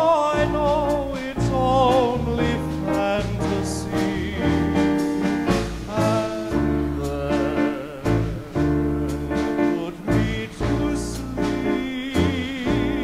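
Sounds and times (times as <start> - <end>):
live dance band playing: 0.0 - 13.0.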